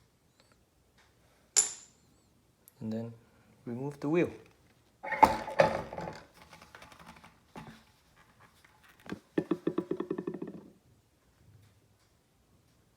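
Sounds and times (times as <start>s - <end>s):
scattered knocks: 9.4s - 10.7s.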